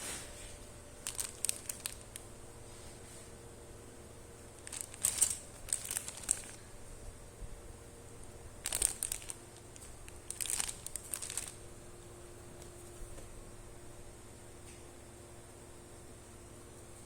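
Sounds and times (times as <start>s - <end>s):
plastic packaging crinkling: 1.0s - 2.4s, 4.5s - 6.8s, 8.2s - 11.7s.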